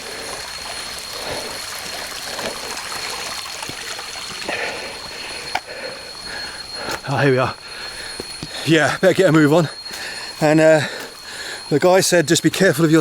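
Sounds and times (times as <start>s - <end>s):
water trickling: 0.0s - 7.0s
steady high-pitched tone: 0.0s - 13.0s.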